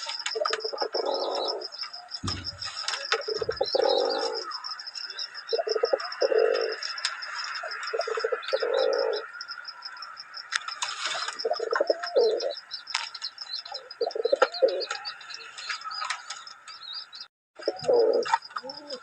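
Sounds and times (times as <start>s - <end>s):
pigeons cooing: 0.0s - 9.4s, 10.6s - 12.7s, 13.6s - 16.3s, 17.6s - 19.0s
brief low thump: 2.2s - 2.8s.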